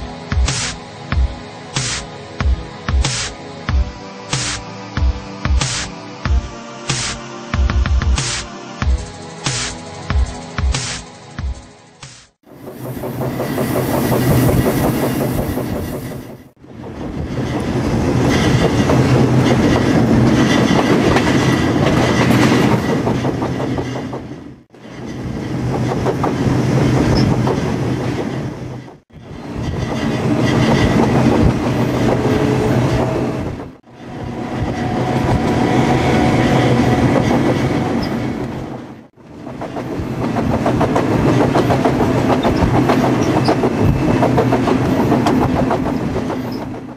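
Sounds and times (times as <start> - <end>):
freight train rolling on rails: 12.4 - 46.9.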